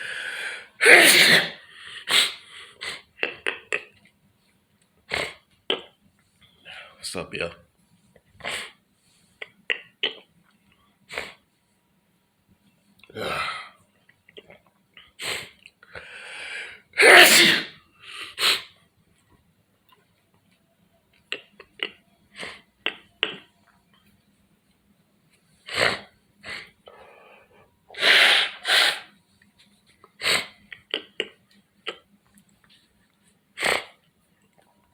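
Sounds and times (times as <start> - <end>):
person sneezing: 0.0 - 3.1, 17.0 - 18.7, 27.9 - 29.1
sharp breathy bursts: 26.5 - 29.1.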